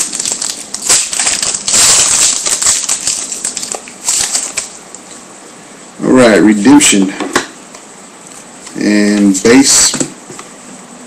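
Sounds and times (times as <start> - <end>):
foil wrapper tearing and crinkling: 0.0 - 4.8.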